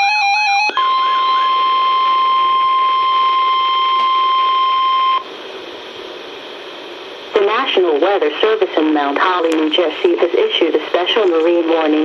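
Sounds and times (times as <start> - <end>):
high-pitched alarm tone: 0.0 - 5.2
radio hiss: 0.8 - 12.0.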